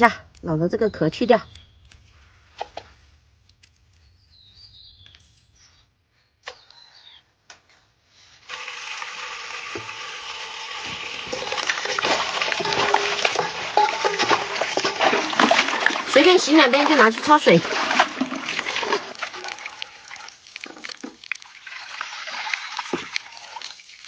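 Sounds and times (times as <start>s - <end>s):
faint bird chirps: 4.0s - 7.3s
tap water running: 8.4s - 24.0s.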